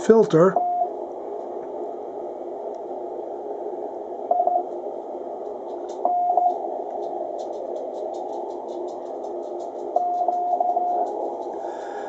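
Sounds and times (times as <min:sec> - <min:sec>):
radio receiver hiss: 0:00.0 - 0:12.0
short steady beeps: 0:00.5 - 0:00.9, 0:04.3 - 0:04.6, 0:06.0 - 0:06.6, 0:10.0 - 0:11.0.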